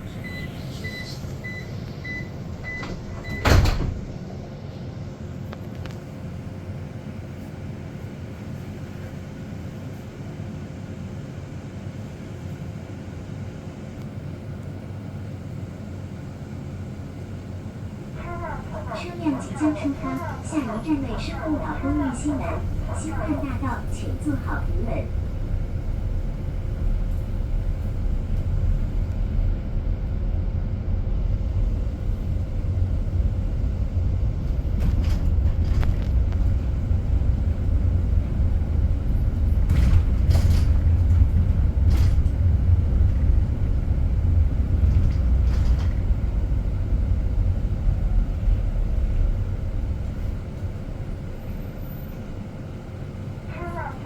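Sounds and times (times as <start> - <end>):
low road rumble: 18.1 - 54.0.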